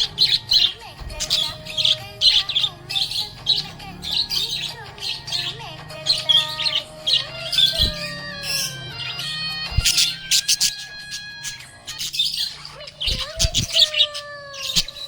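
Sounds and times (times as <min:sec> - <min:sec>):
budgerigars chirping: 0:00.0 - 0:15.0
warbled whistles: 0:06.2 - 0:13.9.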